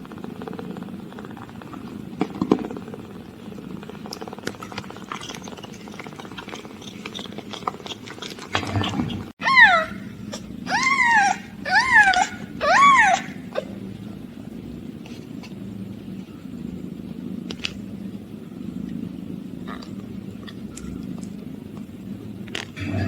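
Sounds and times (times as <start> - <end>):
kitten purring: 0.0 - 16.1
kitten mewing: 8.6 - 13.8.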